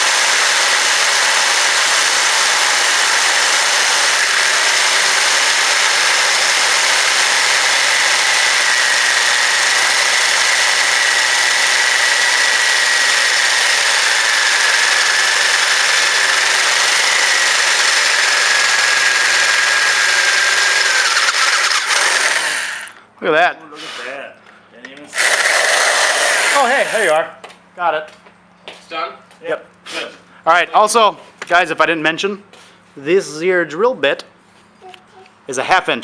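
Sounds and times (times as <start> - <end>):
electric drill whining under load: 0.0 - 23.0, 25.2 - 27.1.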